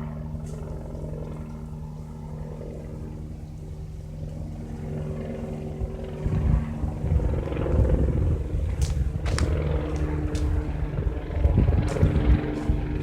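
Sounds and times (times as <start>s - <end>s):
helicopter engine and rotor hum: 0.0s - 13.0s.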